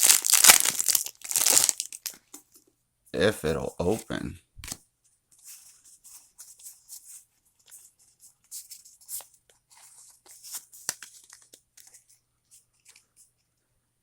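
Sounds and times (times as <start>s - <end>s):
foil wrapper crinkling and ripping: 0.0s - 2.2s.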